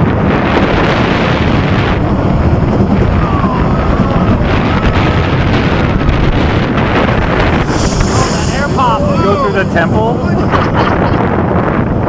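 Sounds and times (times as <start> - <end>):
wind rushing over microphone: 0.0 - 12.0
faint whistling glides: 3.3 - 11.2.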